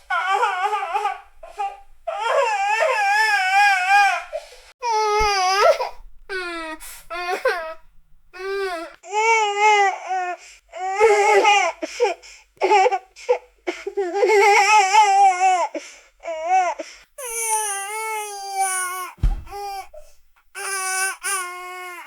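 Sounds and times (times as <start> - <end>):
infant crying: 0.1 - 7.8, 8.4 - 20.0, 20.6 - 22.0
low thump: 19.2 - 20.4.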